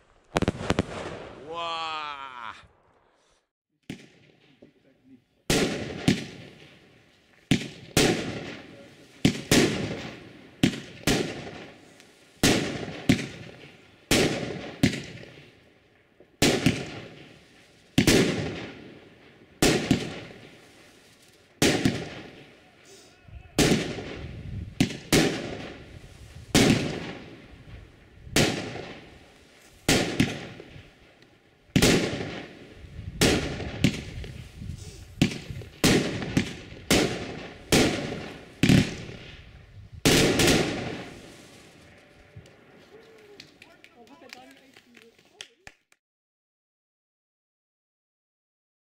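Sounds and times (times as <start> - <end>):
firework bangs echoing: 0.0 - 1.6, 3.8 - 4.7, 5.5 - 15.6, 16.4 - 42.8.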